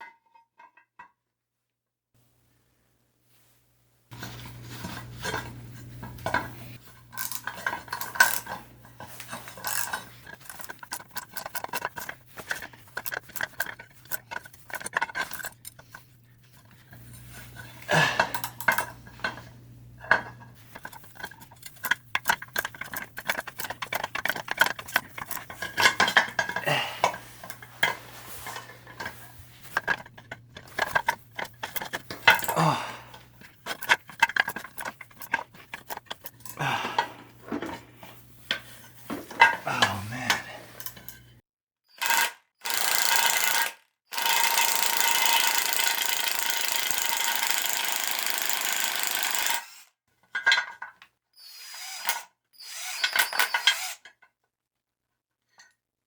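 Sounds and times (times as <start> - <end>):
metal tools clinking and clattering: 4.1 - 41.4, 50.3 - 51.0.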